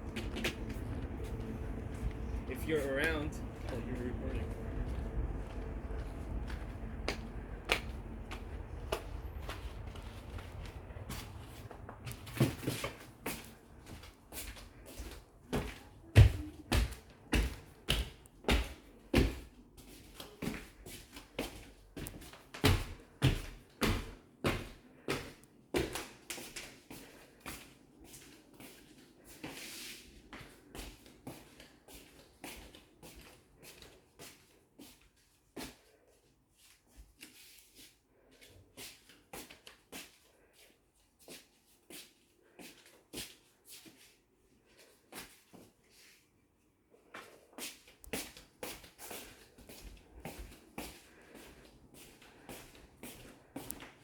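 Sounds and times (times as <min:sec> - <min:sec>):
footsteps walking: 0:00.0 - 0:23.5, 0:47.1 - 0:54.0
soft taps and shuffles: 0:00.0 - 0:46.3, 0:46.9 - 0:54.0.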